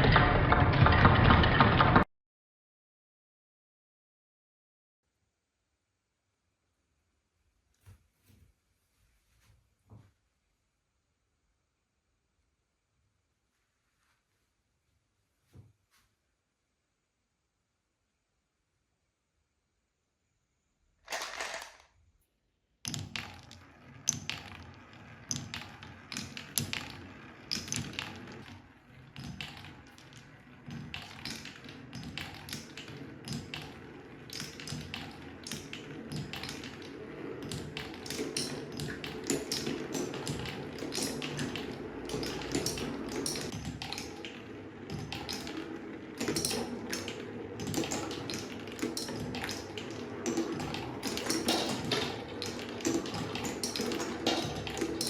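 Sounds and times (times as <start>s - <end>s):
marbles rolling rumble: 0.0s - 2.0s, 21.1s - 21.8s, 22.9s - 55.0s
marbles clacking on wood: 21.1s - 21.8s, 22.9s - 55.0s.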